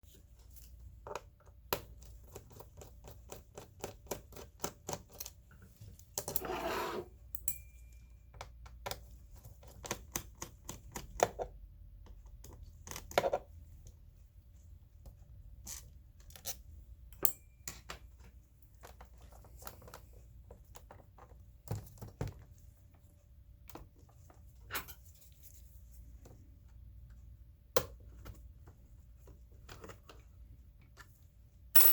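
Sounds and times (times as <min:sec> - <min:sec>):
short scraping rub: 0:06.4 - 0:07.2.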